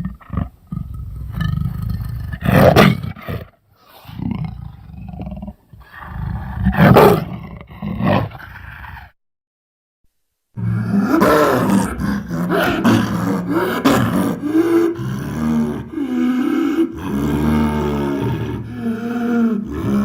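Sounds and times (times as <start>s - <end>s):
dinosaur roaring growl: 10.6s - 20.0s.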